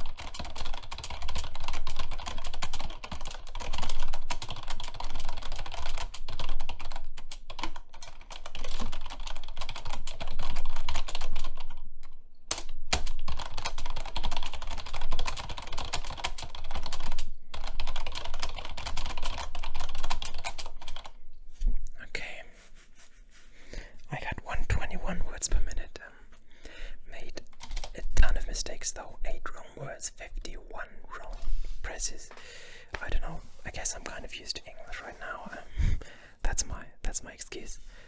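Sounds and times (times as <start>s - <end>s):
fast typing on keyboard: 0.0s - 21.2s, 27.3s - 28.5s.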